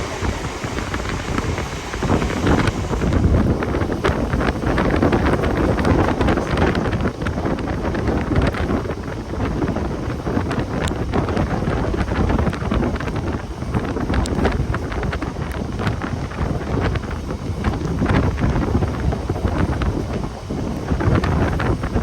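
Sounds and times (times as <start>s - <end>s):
electric train running: 0.0s - 7.9s
wheels clattering on track: 0.0s - 22.0s
wind rushing over microphone: 0.0s - 22.0s.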